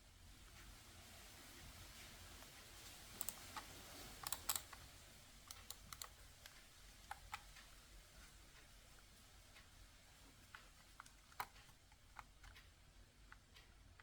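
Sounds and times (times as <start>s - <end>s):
mechanical keyboard clicks: 3.2s - 7.7s, 10.4s - 14.0s.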